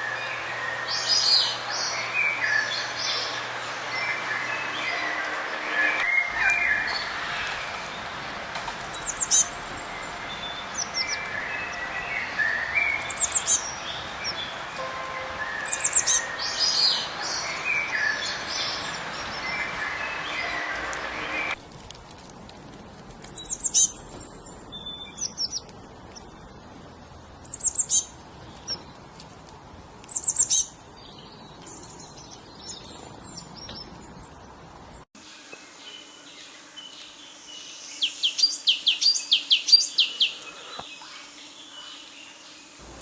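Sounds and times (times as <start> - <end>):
songbirds chirping: 0.0 - 22.3, 23.0 - 43.0
bird rapid high notes: 14.8 - 21.6.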